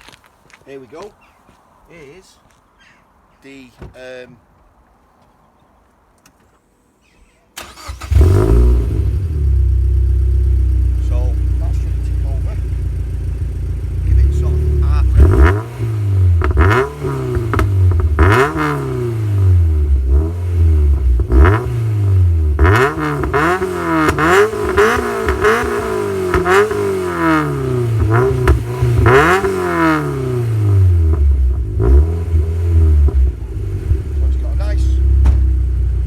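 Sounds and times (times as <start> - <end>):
car engine idling: 7.6 - 36.0
car engine revving: 7.6 - 36.0
exhaust crackle: 7.6 - 36.0.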